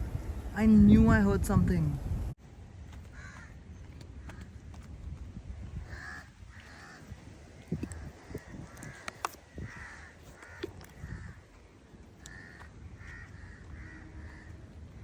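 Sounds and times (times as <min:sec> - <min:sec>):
crow cawing: 0:03.1 - 0:03.6, 0:05.8 - 0:07.2, 0:07.9 - 0:11.6, 0:12.2 - 0:14.7.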